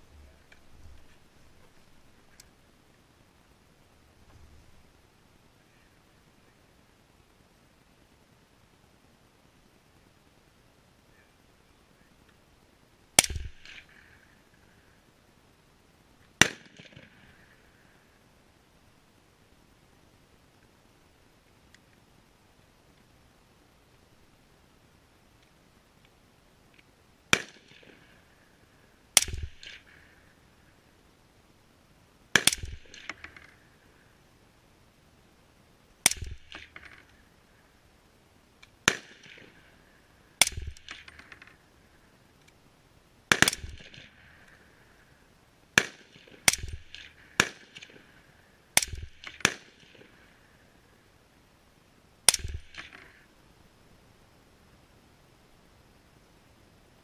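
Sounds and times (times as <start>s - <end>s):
suppressed rifle shots with echo: 13.2s - 14.3s, 16.4s - 17.6s, 27.3s - 28.6s, 29.2s - 30.4s, 32.3s - 33.7s, 36.0s - 37.3s, 38.8s - 41.6s, 43.3s - 44.7s, 45.8s - 48.2s, 48.8s - 50.3s, 52.3s - 53.2s.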